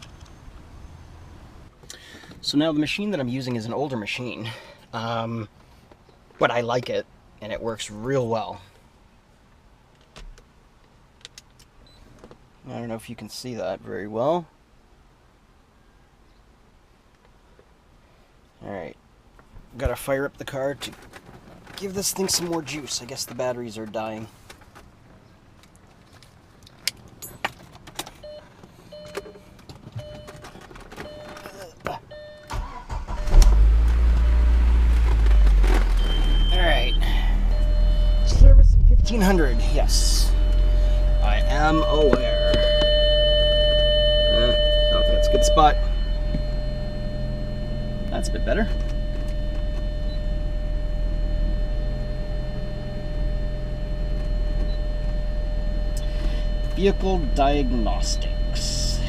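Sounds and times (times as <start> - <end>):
car warning chime: 28.2 - 59.0
high-pitched whine: 34.0 - 59.0.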